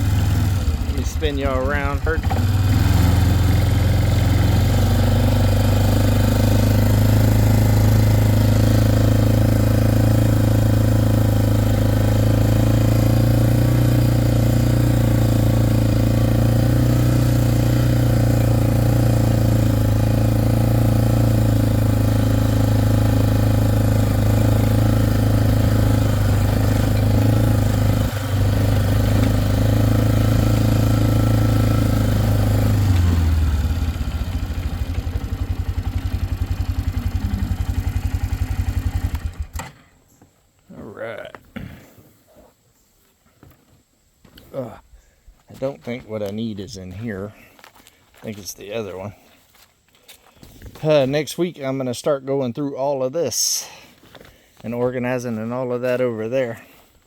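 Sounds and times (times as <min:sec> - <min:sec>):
vehicle engine running: 0:00.0 - 0:39.6.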